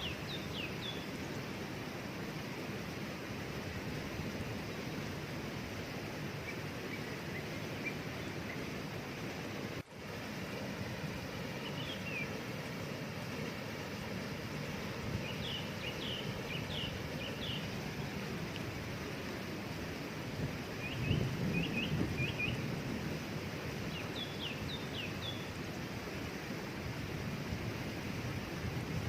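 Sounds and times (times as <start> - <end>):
small birds chirping: 0.0 - 1.4, 6.4 - 8.9, 11.4 - 12.4, 14.8 - 18.6, 20.7 - 22.8, 23.8 - 25.7
waterfall rushing: 0.0 - 29.0.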